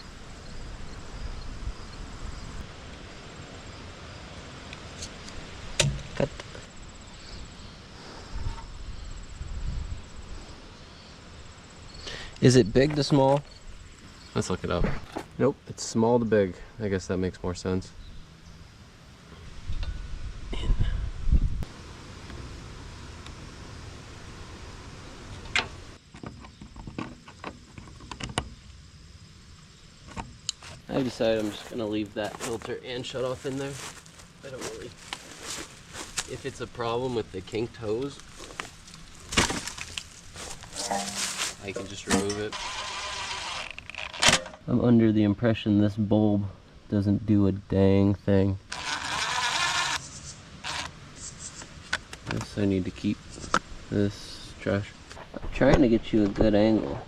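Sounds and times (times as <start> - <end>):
insects chirping: 0.0 - 20.5, 21.3 - 55.2
low rumble and hiss: 0.0 - 26.1, 28.5 - 43.5.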